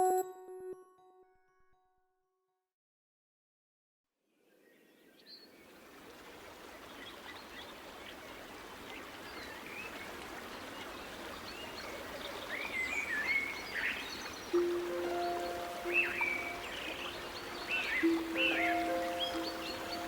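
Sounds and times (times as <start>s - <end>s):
running water: 5.7s - 20.0s
birds chirping: 12.2s - 20.0s.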